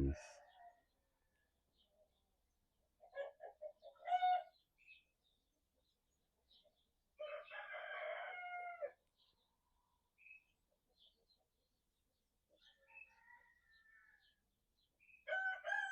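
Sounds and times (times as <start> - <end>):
rooster crowing: 7.2 - 8.9, 15.3 - 15.9
small birds chirping: 9.1 - 15.4.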